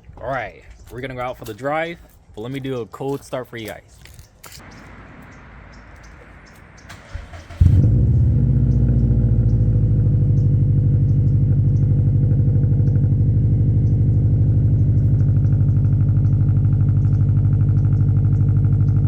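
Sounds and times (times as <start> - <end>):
car engine idling: 4.6 - 19.0.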